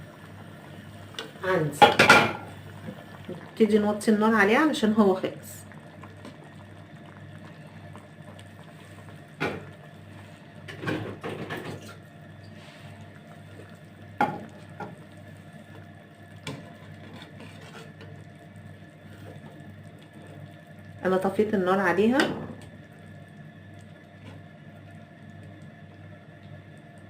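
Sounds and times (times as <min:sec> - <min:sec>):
steady low hum: 0:00.0 - 0:27.0
knocks on cookware: 0:01.8 - 0:02.4.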